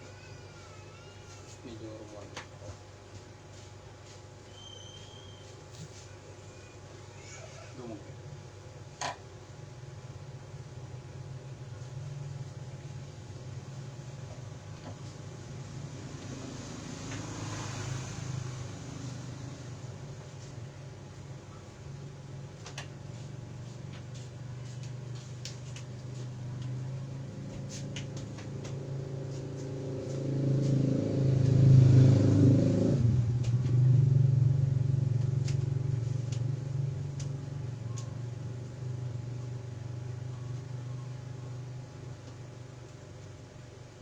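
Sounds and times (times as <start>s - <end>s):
vehicle engine hum passing by: 14.9s - 21.4s, 26.1s - 41.7s.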